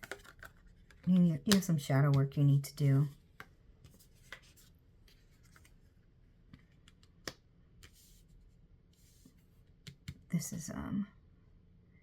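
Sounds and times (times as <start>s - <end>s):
cards clicking and rustling on a table: 0.0s - 2.3s, 3.3s - 5.8s, 6.5s - 8.1s, 9.6s - 10.3s.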